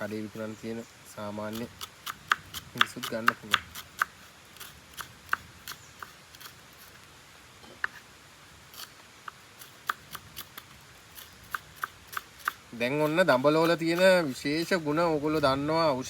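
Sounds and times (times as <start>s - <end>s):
knife chopping on cutting board: 1.8s - 4.1s.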